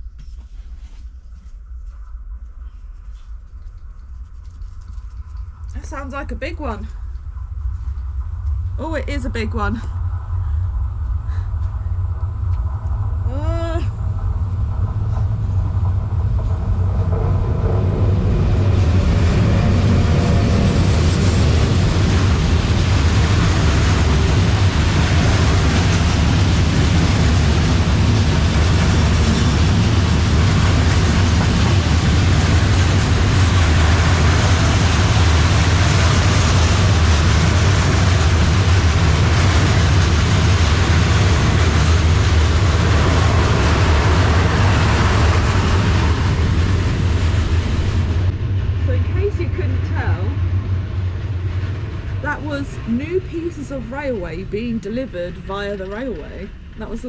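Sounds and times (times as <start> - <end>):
freight train rumbling past: 5.5 - 57.0.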